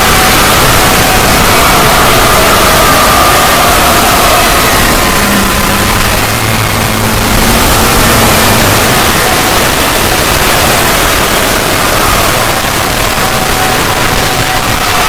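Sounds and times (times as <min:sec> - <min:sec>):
loud wall of noise: 0:00.0 - 0:15.0.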